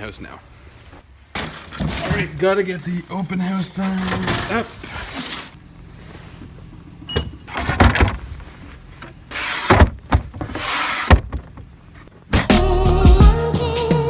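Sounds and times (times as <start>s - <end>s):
knocks and bumps: 1.3s - 2.4s, 6.4s - 12.6s
rushing rustling noises: 4.2s - 6.7s
music: 12.4s - 14.0s.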